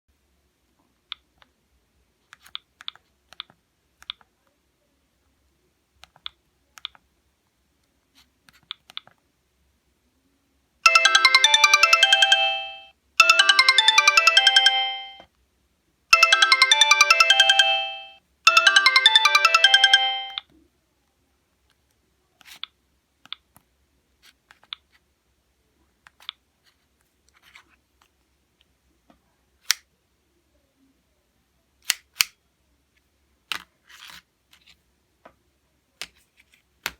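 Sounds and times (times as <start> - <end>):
mobile phone ringtone melody: 10.9 - 15.2, 16.1 - 20.4.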